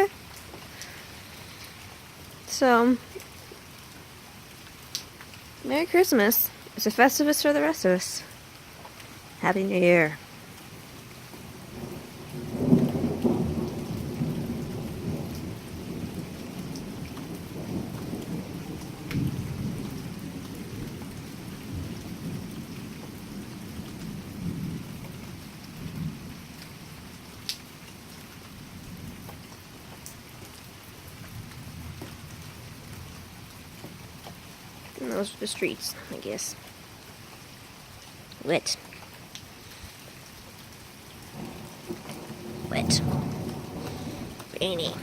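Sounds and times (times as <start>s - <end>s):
steady rain falling: 0.0s - 45.0s
long roll of thunder: 11.6s - 26.5s, 41.2s - 45.0s.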